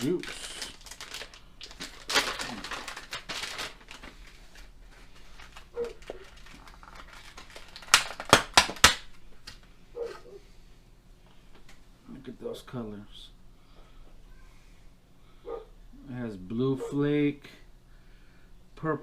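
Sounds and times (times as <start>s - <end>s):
plastic packaging rustling: 0.0s - 9.6s
sharp loud plastic crackles: 0.0s - 9.6s.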